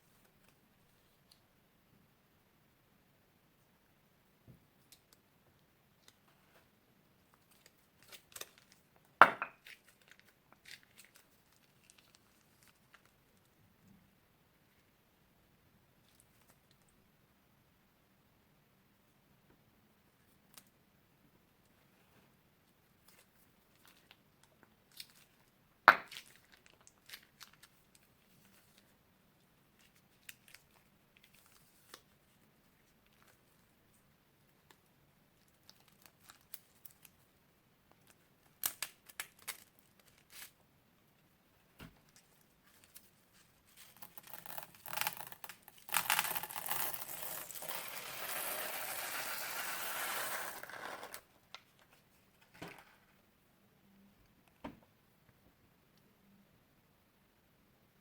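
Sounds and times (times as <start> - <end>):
crunchy slime crackling and popping: 9.6 - 13.1, 24.9 - 28.8, 38.0 - 40.5, 43.7 - 48.6
crunchy slime crackling: 42.8 - 49.2.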